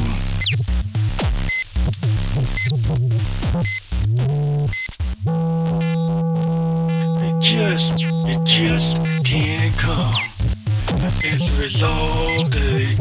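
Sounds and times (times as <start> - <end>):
chopped synth notes with pitch sweeps: 0.0 - 13.0
sustained synth chord: 4.2 - 10.8.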